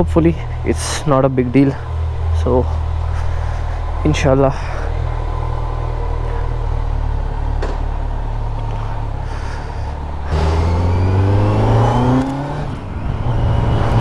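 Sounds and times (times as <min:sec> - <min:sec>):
motorcycle engine accelerating: 0:00.0 - 0:14.0.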